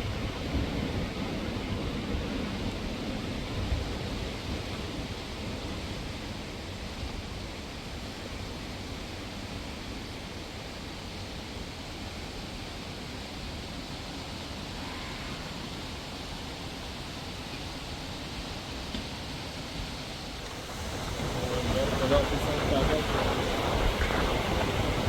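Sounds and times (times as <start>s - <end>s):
snowstorm wind rushing: 19.8s - 25.0s.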